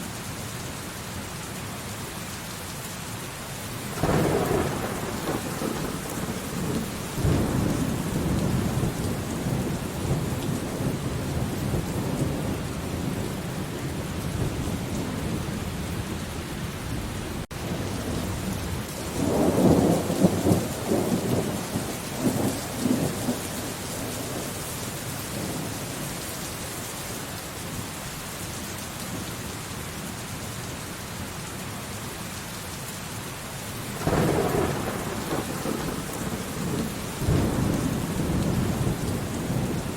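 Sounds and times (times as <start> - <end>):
heavy rain: 0.0 - 39.9
rolling thunder: 3.9 - 24.5, 34.0 - 39.9.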